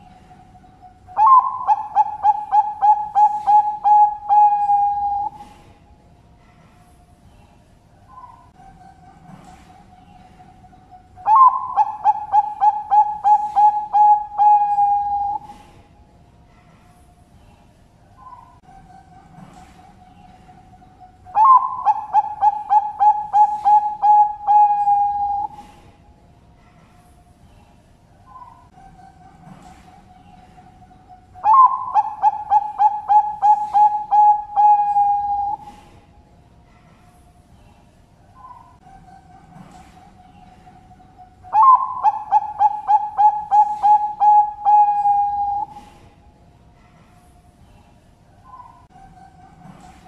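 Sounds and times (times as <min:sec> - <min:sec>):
dove cooing: 0:00.0 - 0:05.7, 0:08.1 - 0:15.8, 0:18.2 - 0:25.9, 0:28.3 - 0:36.0, 0:38.4 - 0:46.0.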